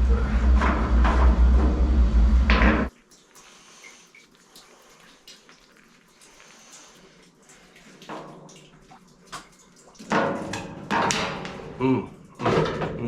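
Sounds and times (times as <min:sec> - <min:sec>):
loud low rumble: 0:00.0 - 0:02.9
liquid trickling through hose: 0:02.9 - 0:10.9.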